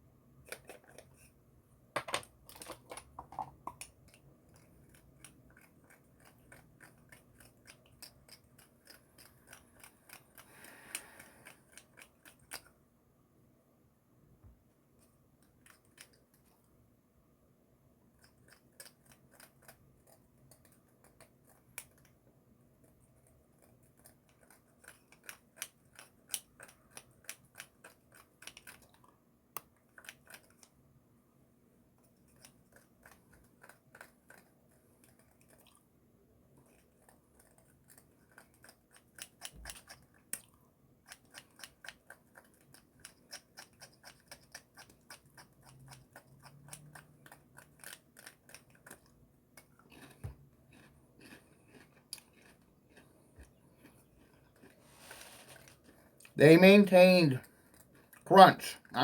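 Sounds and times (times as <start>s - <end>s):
chewing crunchy snacks: 3.8s - 12.8s, 22.8s - 30.8s, 32.0s - 56.4s, 57.4s - 58.9s.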